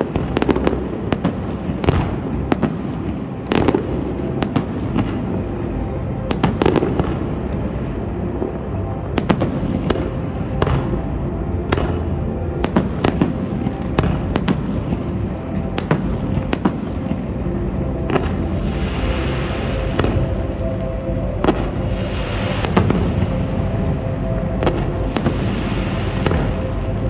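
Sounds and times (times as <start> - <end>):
continuous rumble: 0.0 - 27.0
fireworks bangs: 15.8 - 16.8, 22.6 - 23.3.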